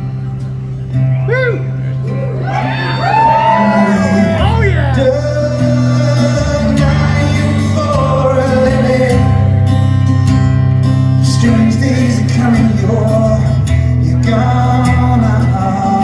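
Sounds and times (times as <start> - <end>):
live rock band playing: 0.0 - 16.0
voice wailing wordlessly: 1.3 - 5.2.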